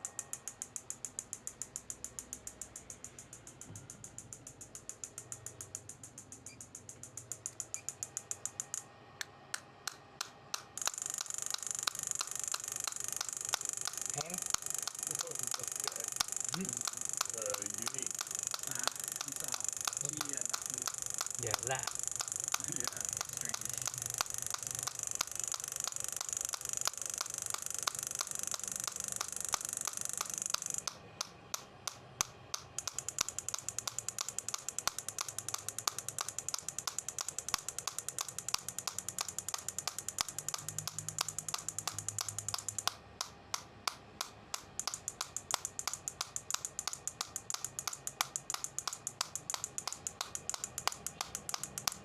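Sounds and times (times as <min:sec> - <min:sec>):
rapid even clicking: 0:06.9 - 0:52.0
high hiss: 0:10.8 - 0:30.9.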